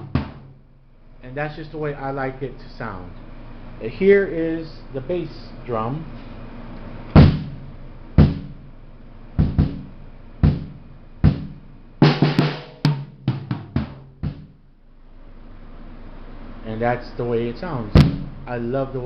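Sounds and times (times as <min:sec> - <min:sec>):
bass drum kicks: 0:00.0 - 0:00.7, 0:07.2 - 0:08.8, 0:09.4 - 0:14.7, 0:17.9 - 0:18.5.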